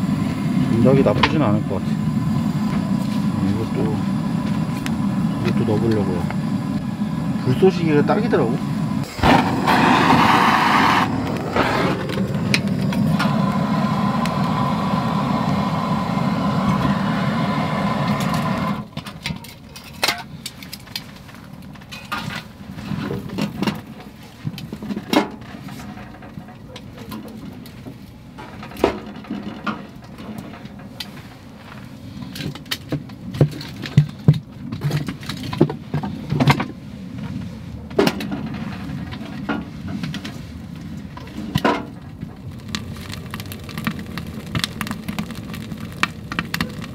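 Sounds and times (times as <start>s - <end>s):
gas torch hissing: 0.0s - 19.0s
kindling crackling: 0.0s - 35.6s, 37.1s - 46.9s.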